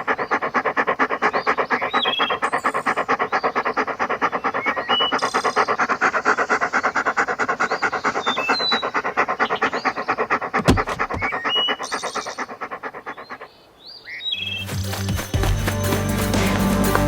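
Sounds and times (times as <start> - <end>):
fast pulsing music: 14.6 - 17.0.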